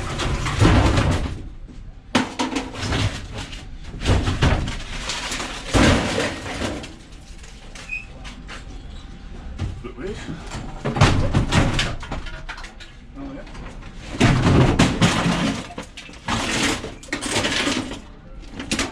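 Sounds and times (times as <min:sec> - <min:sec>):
metal clattering bangs: 0:00.0 - 0:07.1, 0:14.1 - 0:18.9.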